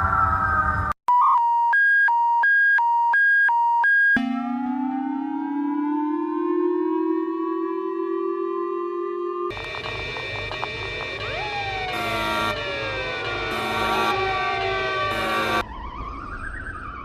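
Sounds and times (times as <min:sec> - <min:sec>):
alternating high and low alert tones: 0:04.2 - 0:07.6, 0:10.8 - 0:15.6
rising siren-like chord: 0:04.2 - 0:17.0.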